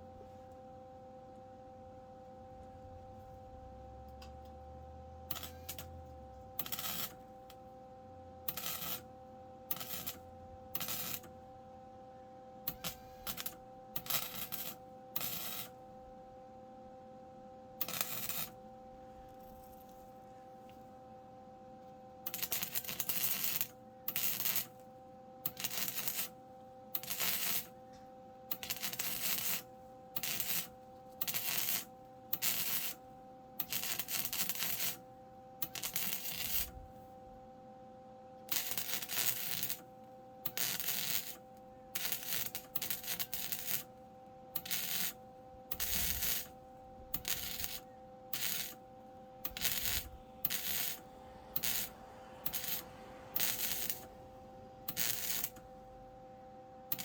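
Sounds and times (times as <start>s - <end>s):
steady low hum: 0.0s - 57.0s
welder crackling sizzle: 5.3s - 7.6s, 8.4s - 11.4s, 12.7s - 15.8s, 17.8s - 18.7s, 22.2s - 37.0s, 38.5s - 56.2s.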